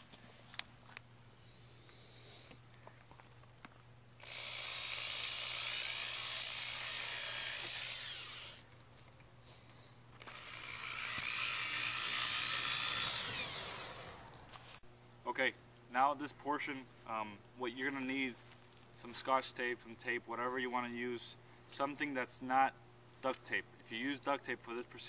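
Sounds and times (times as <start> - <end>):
power drill drilling: 4.2 - 8.6, 10.2 - 14.3.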